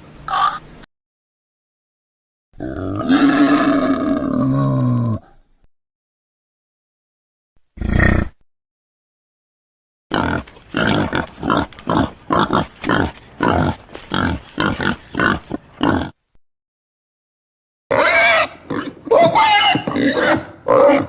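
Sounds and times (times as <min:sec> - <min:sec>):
pig grunting: 0:02.6 - 0:05.3, 0:10.1 - 0:16.2.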